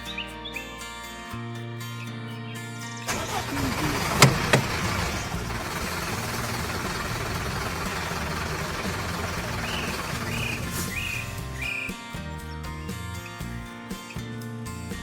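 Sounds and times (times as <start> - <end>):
vehicle engine running: 3.1 - 11.7
sharp metal clanks: 4.1 - 5.2
bird chirps: 9.5 - 12.0.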